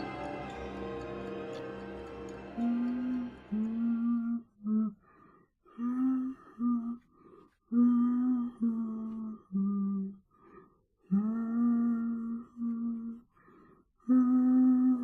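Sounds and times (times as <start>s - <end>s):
person humming a slow tune: 0.0s - 5.0s, 5.7s - 7.1s, 7.7s - 10.2s, 11.1s - 13.2s, 14.1s - 15.0s.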